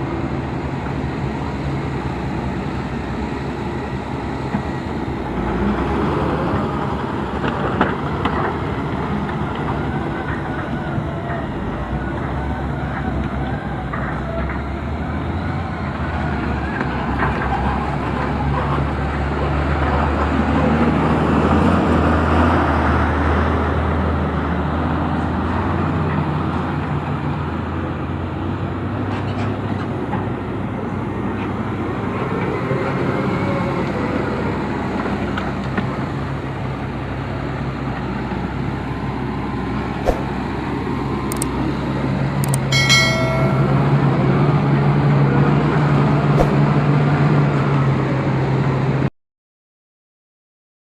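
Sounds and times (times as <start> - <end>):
diesel engine droning: 0.0 - 49.0
sharp clicks: 41.3 - 41.5
brief pitched tone: 42.7 - 44.3.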